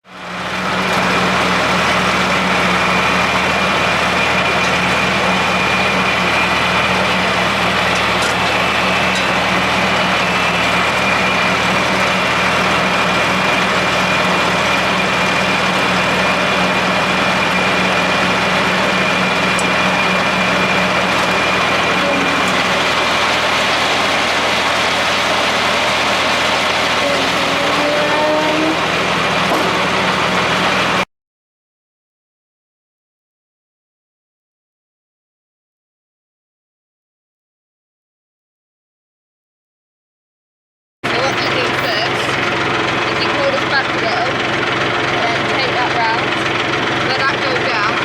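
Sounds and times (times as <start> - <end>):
tractor engine running: 0.0 - 31.1, 41.0 - 48.0.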